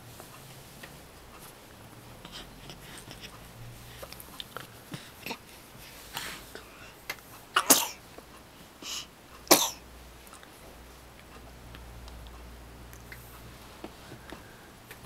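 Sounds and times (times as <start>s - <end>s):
soft breathy sound: 0.0s - 7.2s, 8.5s - 9.2s, 13.1s - 15.0s
baby sneezing: 7.6s - 8.0s.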